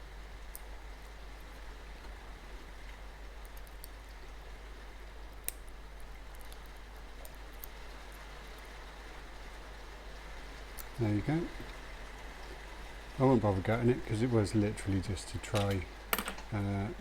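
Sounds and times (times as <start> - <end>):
lock pick clicks: 15.6 - 16.5.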